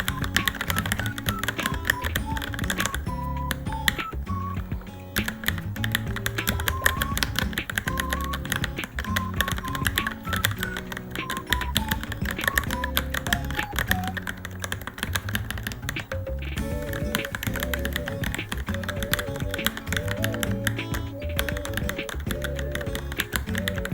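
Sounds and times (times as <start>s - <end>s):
background music: 0.0s - 23.9s
fast typing on mechanical keyboard: 16.8s - 23.9s.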